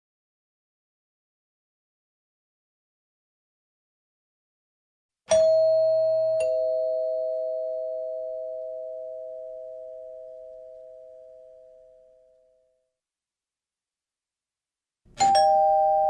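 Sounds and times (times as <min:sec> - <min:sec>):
two-note doorbell chime: 0:05.3 - 0:11.9, 0:15.2 - 0:16.0.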